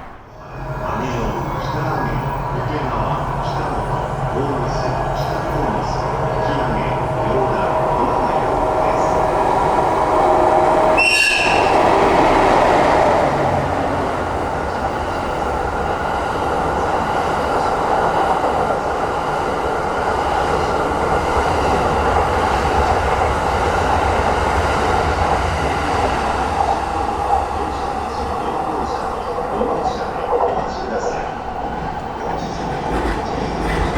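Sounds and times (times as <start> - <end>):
train rumbling on rails: 0.0 - 33.9.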